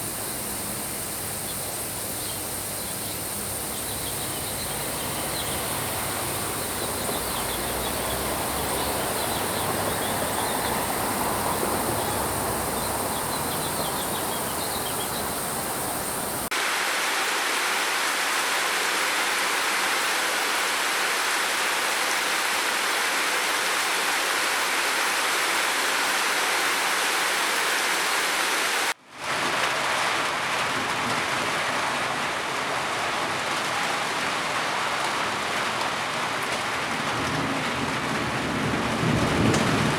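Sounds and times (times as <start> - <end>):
steady rain: 0.0 - 39.9
faint high chirping: 1.4 - 16.5.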